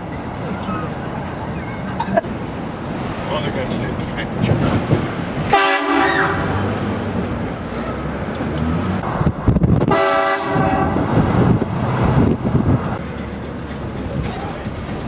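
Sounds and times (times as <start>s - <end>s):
train horn blast: 5.5s - 6.6s, 9.8s - 11.1s.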